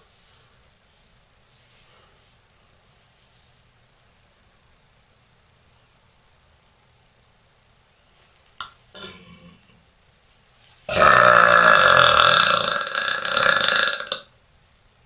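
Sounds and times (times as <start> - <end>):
woman burping loudly: 9.0 - 9.7, 10.9 - 14.3.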